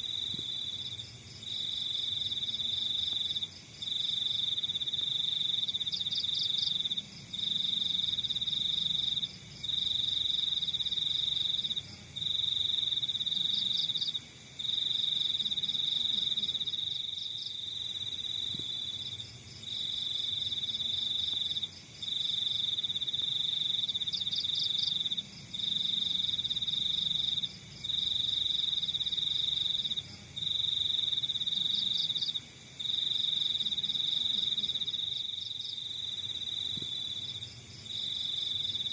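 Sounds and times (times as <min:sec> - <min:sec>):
cricket trilling: 0:00.0 - 0:38.9
faint insects chirping: 0:00.0 - 0:38.9.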